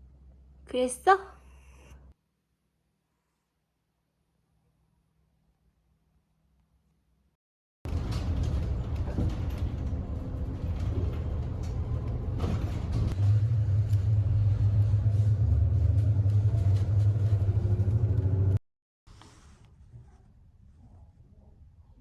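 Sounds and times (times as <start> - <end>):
car engine and road noise: 7.9 - 18.6.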